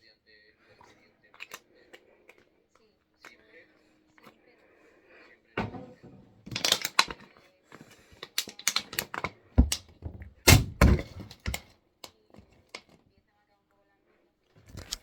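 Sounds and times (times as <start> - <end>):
heavy thud: 5.6 - 6.5, 9.6 - 11.3
hard objects knocking and clacking: 5.6 - 7.2, 8.2 - 11.6.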